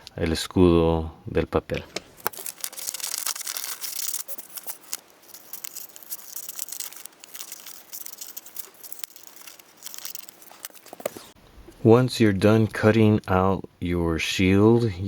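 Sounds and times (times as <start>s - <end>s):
paper rustling: 2.1s - 11.4s
scissors snipping paper: 2.2s - 11.3s.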